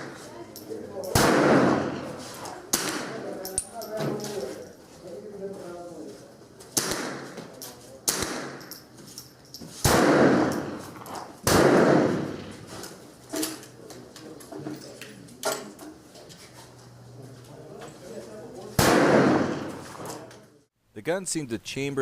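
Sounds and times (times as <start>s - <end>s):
rifle shots: 1.1s - 2.1s, 6.8s - 7.4s, 8.1s - 8.6s, 9.8s - 12.6s, 18.8s - 19.9s.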